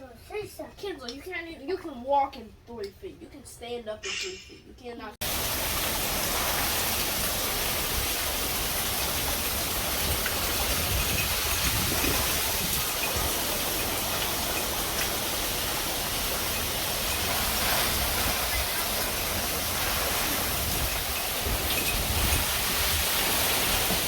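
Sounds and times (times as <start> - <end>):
heavy rain falling: 5.2 - 24.0.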